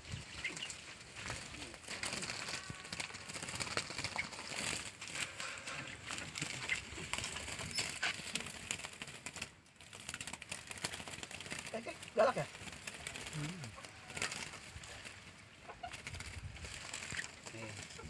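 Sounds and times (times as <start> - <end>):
birds fluttering and scrabbling: 0.0 - 18.0.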